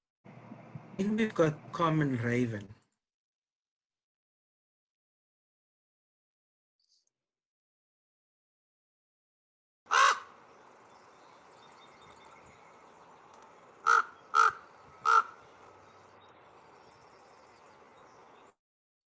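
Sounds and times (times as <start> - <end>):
faint field recording hiss: 0.3 - 2.8, 9.9 - 18.6
raven calls: 9.9 - 10.6, 13.7 - 16.0.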